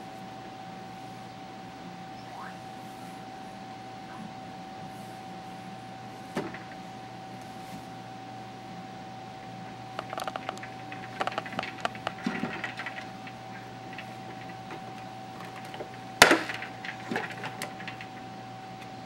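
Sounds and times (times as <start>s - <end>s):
faint steady hum: 0.0s - 19.0s
hard objects clicking and tapping: 10.0s - 18.3s.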